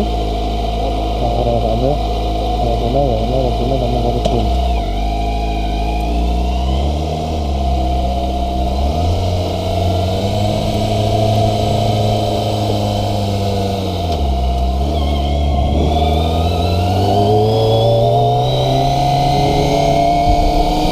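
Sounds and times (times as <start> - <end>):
motorcycle engine running: 0.0 - 20.9.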